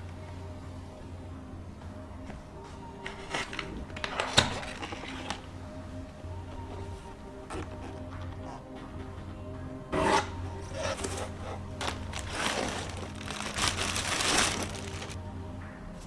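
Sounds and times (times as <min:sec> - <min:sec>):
soft background music: 0:00.0 - 0:16.0
hands rubbing and scraping packaging: 0:10.1 - 0:15.2.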